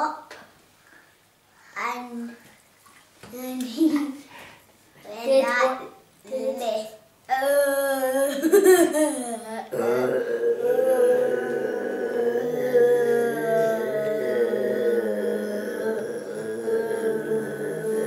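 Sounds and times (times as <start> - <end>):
child imitating a burp: 7.4 - 18.0.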